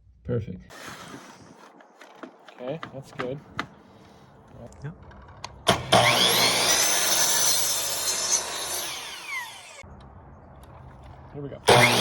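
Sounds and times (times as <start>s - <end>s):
mitre saw whining: 5.7s - 9.8s, 11.7s - 12.0s
saw cutting wooden trim: 5.7s - 9.8s, 11.7s - 12.0s.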